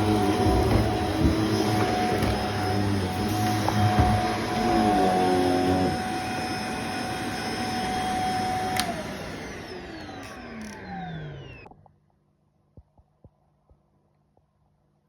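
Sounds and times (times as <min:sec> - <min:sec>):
vacuum cleaner motor whining: 0:00.0 - 0:11.7.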